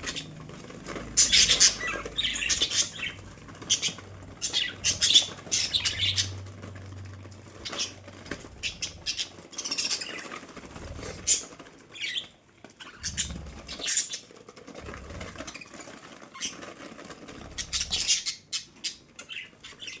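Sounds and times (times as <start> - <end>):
budgerigars chattering and squawking: 0.0 - 6.5, 7.5 - 14.2, 17.6 - 20.0.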